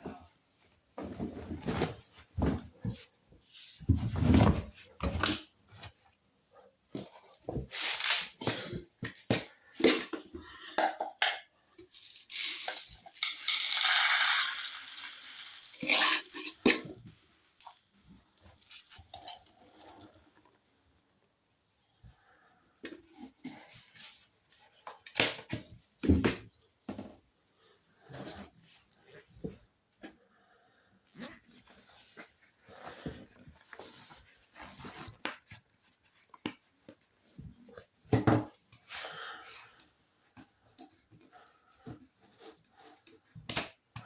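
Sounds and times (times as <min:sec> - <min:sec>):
hard items knocking and clattering: 0:37.4 - 0:38.6.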